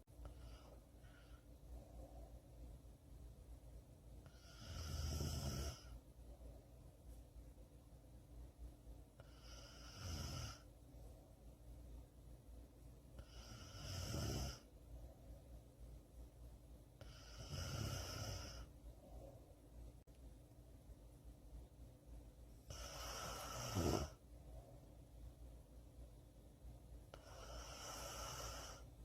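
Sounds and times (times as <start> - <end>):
person snoring: 4.3 - 6.0, 9.2 - 10.6, 13.2 - 14.7, 17.0 - 18.7, 22.7 - 24.2, 27.2 - 28.9.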